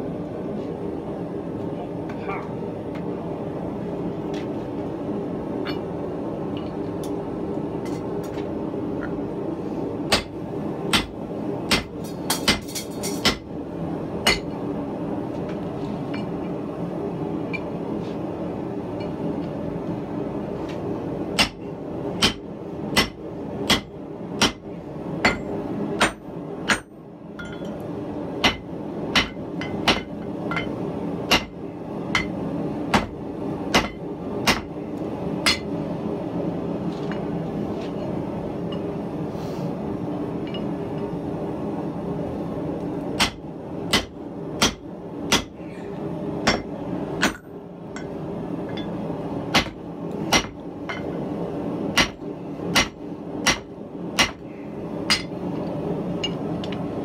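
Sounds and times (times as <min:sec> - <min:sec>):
hammer striking steel on anvil: 0:22.2 - 0:24.6, 0:25.2 - 0:27.7, 0:28.4 - 0:30.7, 0:31.3 - 0:31.5, 0:43.2 - 0:45.6, 0:46.5 - 0:48.9, 0:51.9 - 0:52.2, 0:52.8 - 0:54.4, 0:55.1 - 0:55.4.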